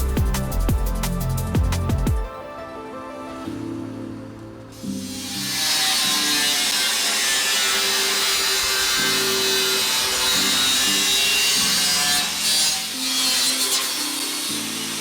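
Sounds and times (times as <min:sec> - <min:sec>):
background music: 0:00.0 - 0:15.0
power tool cutting steel: 0:04.8 - 0:15.0.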